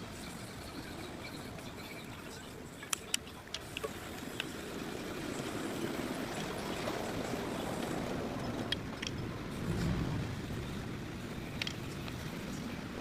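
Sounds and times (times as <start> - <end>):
low rumbling: 9.2 - 13.0.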